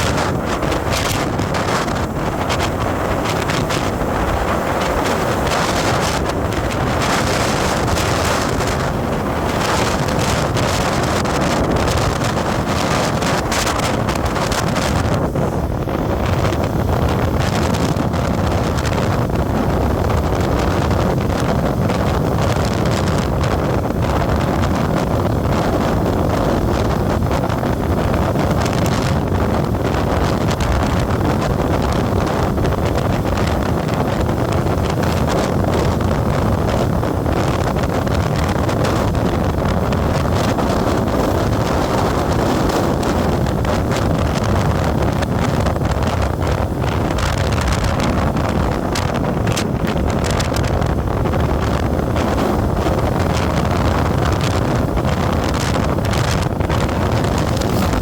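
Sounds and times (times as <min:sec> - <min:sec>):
road noise: 0:00.0 - 0:58.0
vehicle engine hum: 0:00.0 - 0:58.0
wind rushing over microphone: 0:00.0 - 0:58.0.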